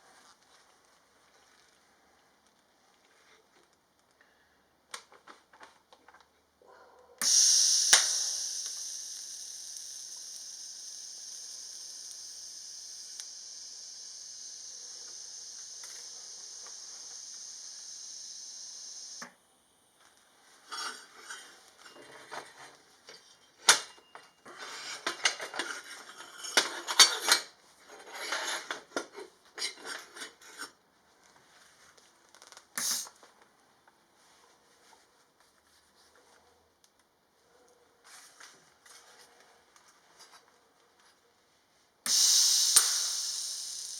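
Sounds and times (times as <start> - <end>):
steady hiss: 7.2 - 20.7, 32.8 - 33.2, 42.1 - 43.9.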